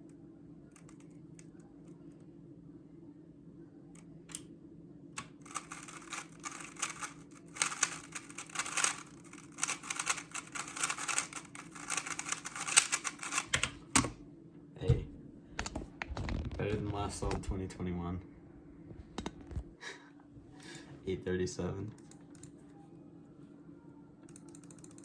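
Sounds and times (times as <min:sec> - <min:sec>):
speedcube clicking: 0:05.2 - 0:14.1, 0:24.3 - 0:25.0.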